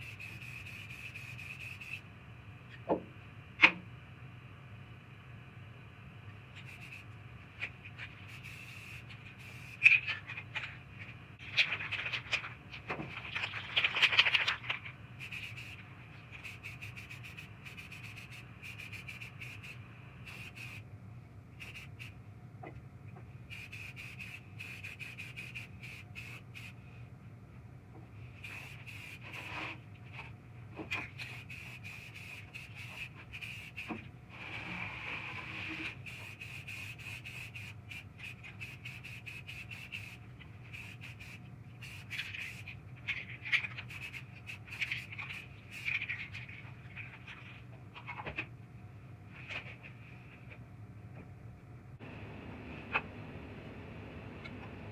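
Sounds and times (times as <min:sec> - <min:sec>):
hand sanding strokes: 0:16.5 - 0:20.8.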